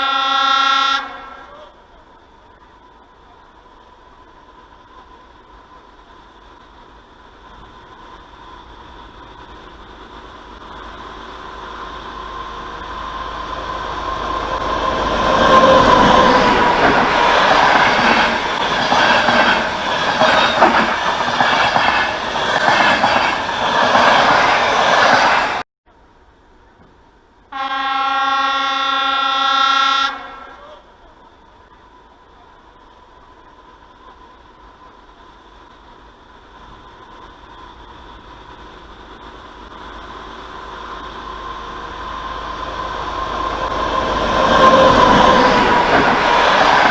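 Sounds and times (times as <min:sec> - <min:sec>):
train horn blast: 0:00.0 - 0:01.8, 0:27.5 - 0:30.8
train passing: 0:00.0 - 0:46.9
wheels clacking over rail joints: 0:05.0 - 0:25.6, 0:35.7 - 0:46.9.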